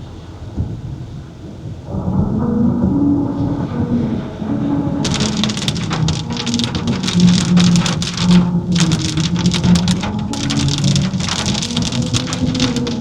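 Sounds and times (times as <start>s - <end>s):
heavy rain pattering and dripping: 5.0s - 13.0s
low steady tones: 5.0s - 13.0s.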